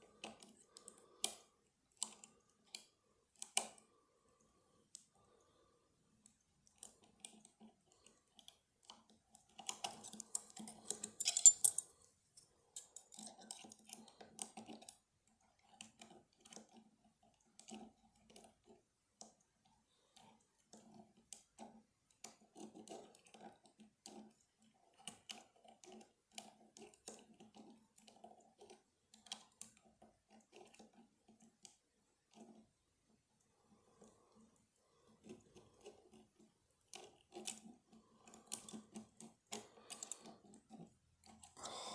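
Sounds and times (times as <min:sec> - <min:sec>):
lock picks clicking and scraping: 0:06.7 - 0:15.0, 0:20.8 - 0:32.6, 0:35.1 - 0:41.6.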